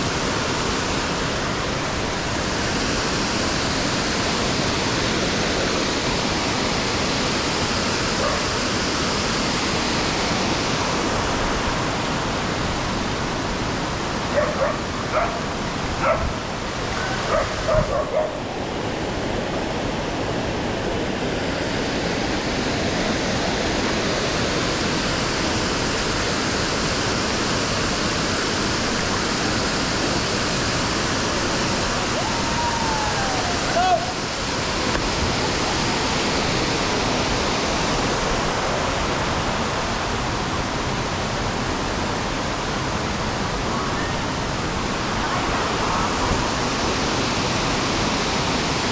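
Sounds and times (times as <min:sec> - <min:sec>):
waterfall rushing: 0:00.0 - 0:48.9
dog barking: 0:08.2 - 0:08.5, 0:14.3 - 0:16.4, 0:17.0 - 0:18.4.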